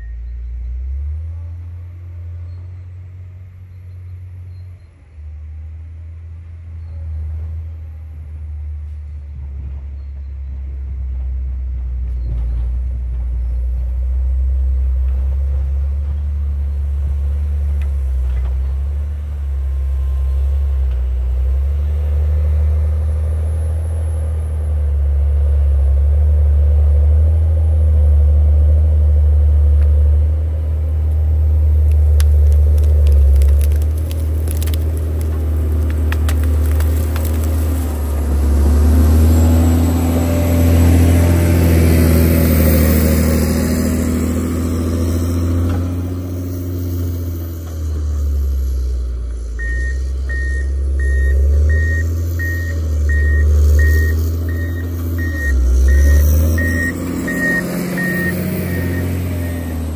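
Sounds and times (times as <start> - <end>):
diesel engine low rumble: 0.0 - 59.9
gravel ticking and crackling: 31.0 - 39.4.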